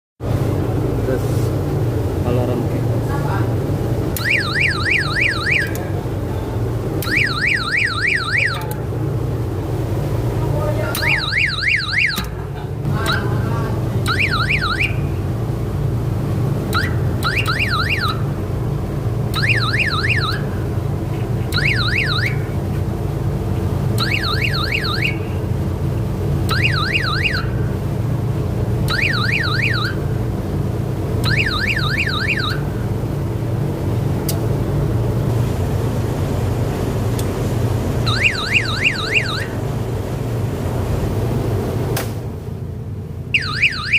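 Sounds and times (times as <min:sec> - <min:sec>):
steady low hum: 0:00.2 - 0:43.9
warbling alarm tone: 0:04.2 - 0:05.8, 0:07.0 - 0:08.8, 0:11.0 - 0:12.3, 0:14.0 - 0:15.3, 0:16.6 - 0:18.4, 0:19.3 - 0:20.8, 0:21.5 - 0:22.6, 0:24.0 - 0:25.5, 0:26.4 - 0:27.8, 0:28.8 - 0:30.2, 0:31.2 - 0:33.0, 0:38.0 - 0:39.6, 0:43.3 - 0:43.9.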